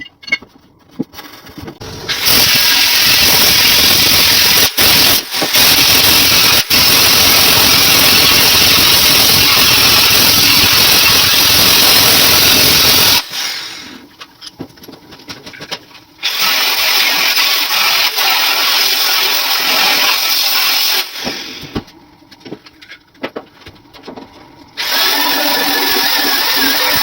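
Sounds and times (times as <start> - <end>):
loud steady hiss: 1.8 - 14.1.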